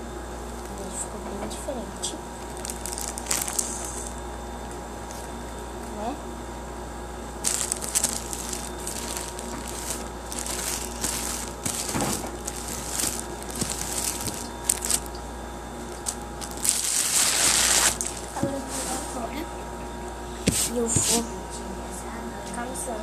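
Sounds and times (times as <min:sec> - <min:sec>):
slime crackling and popping: 0:02.4 - 0:04.2, 0:07.4 - 0:15.2, 0:16.0 - 0:18.4.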